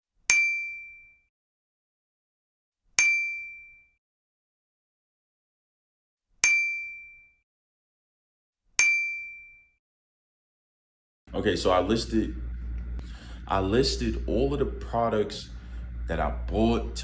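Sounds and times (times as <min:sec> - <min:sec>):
bright metallic ding: 0:03.0 - 0:03.8, 0:06.4 - 0:07.3, 0:08.8 - 0:09.6.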